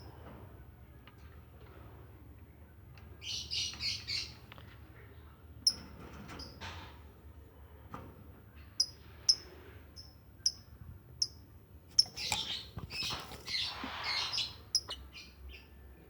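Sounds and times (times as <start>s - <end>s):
lovebirds chirping: 8.8s - 15.8s.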